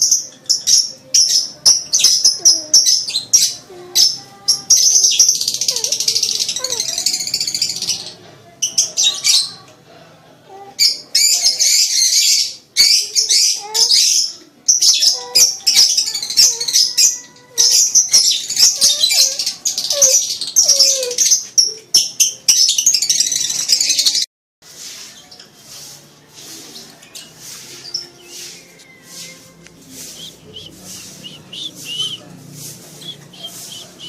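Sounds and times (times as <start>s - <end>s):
lovebird chattering song: 26.4s - 34.0s.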